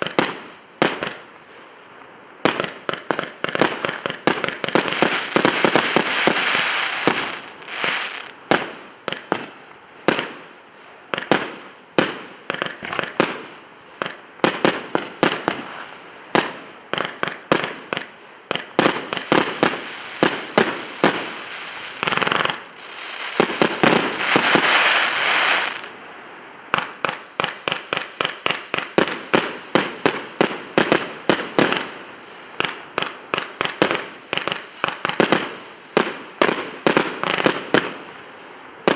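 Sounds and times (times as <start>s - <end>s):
firework bangs: 2.5s - 10.4s, 16.4s - 25.9s, 26.7s - 32.0s
firework crackling hiss: 3.2s - 8.8s, 18.8s - 26.0s, 26.8s - 38.1s.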